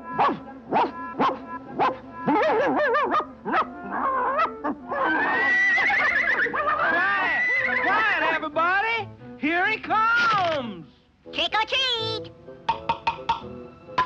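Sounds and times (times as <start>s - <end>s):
bending animal-like calls: 0.0s - 8.0s
background music: 0.0s - 14.0s
cartoon dog-like yips and yelps: 0.1s - 7.6s.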